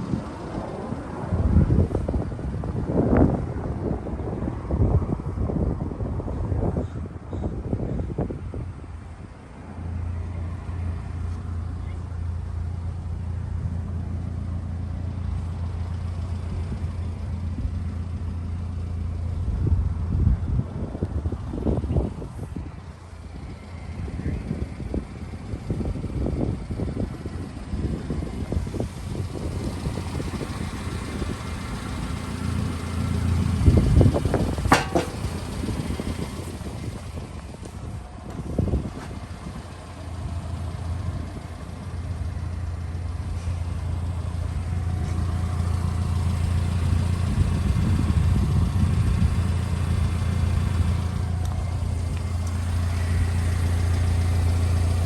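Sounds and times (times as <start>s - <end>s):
truck engine humming: 21.6s - 55.0s
loud irregular bumps: 30.9s - 37.2s
sharp ringing knock: 34.7s - 36.0s.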